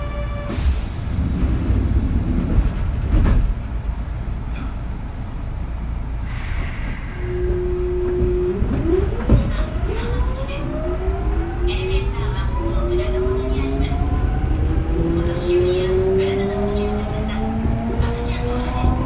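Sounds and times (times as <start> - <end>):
low rumble with clicks: 0.5 - 19.0
train motor hum and whine: 7.2 - 19.0.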